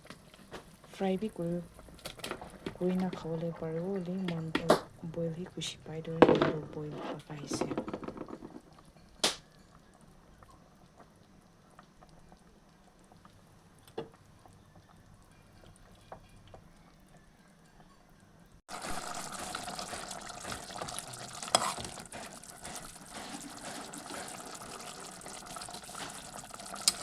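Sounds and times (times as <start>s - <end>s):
curry bubbling in a pot: 0.0s - 4.4s, 8.0s - 17.9s, 18.7s - 27.0s
utensil clicking on pot: 18.9s - 27.0s.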